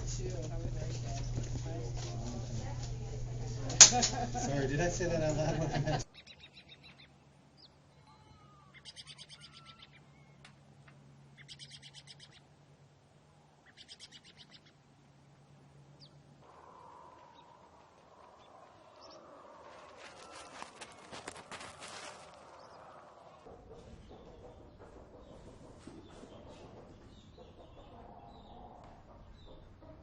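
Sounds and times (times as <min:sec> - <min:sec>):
steady low hum: 0:00.0 - 0:29.8
bird singing rapid trills: 0:06.1 - 0:10.4, 0:11.3 - 0:12.5, 0:13.6 - 0:14.8
wide dense noise: 0:14.7 - 0:23.5.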